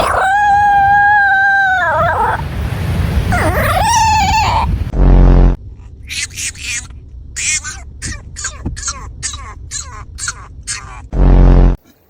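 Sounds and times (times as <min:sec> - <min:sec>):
dog howling whines: 0:00.0 - 0:02.5, 0:03.3 - 0:04.7
low buzzing rasp: 0:11.1 - 0:11.8.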